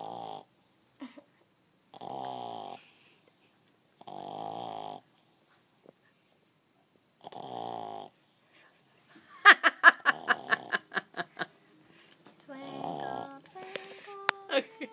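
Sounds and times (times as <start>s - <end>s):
puppy snoring: 0.0s - 0.6s, 1.9s - 3.0s, 4.0s - 5.4s, 7.2s - 8.3s, 10.1s - 10.9s, 12.5s - 13.4s.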